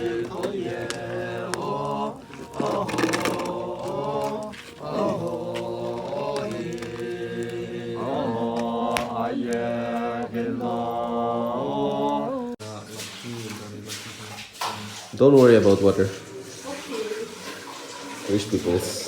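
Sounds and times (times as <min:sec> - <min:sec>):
person singing long notes: 0:00.0 - 0:12.6.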